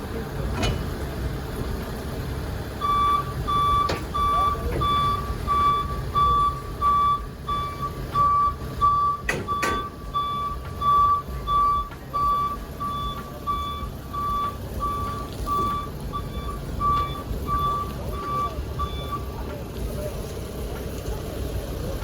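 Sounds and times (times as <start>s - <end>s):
low engine rumble: 0.0s - 22.0s
backup alarm beeping: 2.8s - 19.5s.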